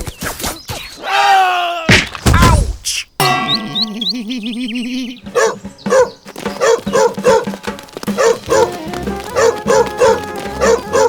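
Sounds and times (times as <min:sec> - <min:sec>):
warbling tone: 0:03.2 - 0:05.2
background music: 0:03.2 - 0:11.0
dog barking: 0:05.3 - 0:11.0.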